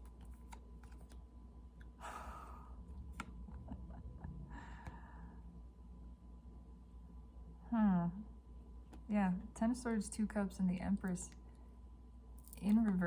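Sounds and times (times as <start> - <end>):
person exhaling softly: 2.0 - 2.8, 4.4 - 5.4.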